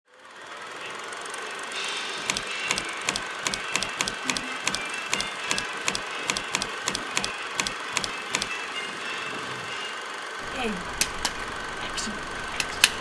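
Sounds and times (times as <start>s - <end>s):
sharp short taps: 10.4s - 13.0s.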